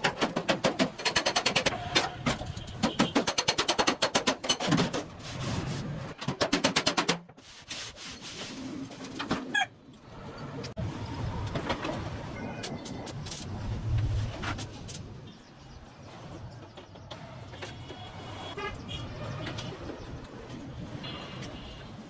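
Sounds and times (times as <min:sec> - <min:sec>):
hand sanding rasping strokes: 0:07.4 - 0:08.8.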